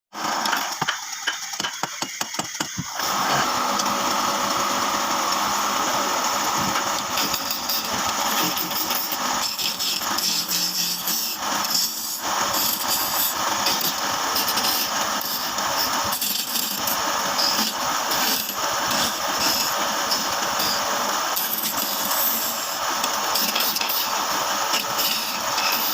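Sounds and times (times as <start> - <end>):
woodworking machine running: 0.2 - 25.9
woodworking tool strokes: 2.6 - 25.9.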